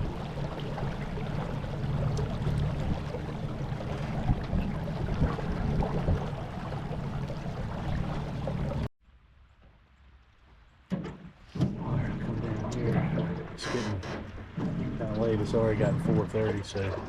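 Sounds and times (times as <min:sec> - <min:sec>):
boat motor running: 0:00.0 - 0:08.9
rushing water: 0:00.0 - 0:08.9, 0:11.5 - 0:17.0
wind: 0:00.0 - 0:17.0.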